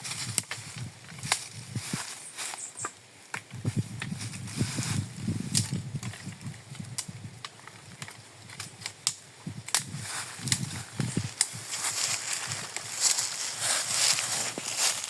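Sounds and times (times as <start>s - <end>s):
footsteps on leaf litter: 0.0s - 6.2s, 9.9s - 15.0s
dry twigs snapping: 0.0s - 15.0s.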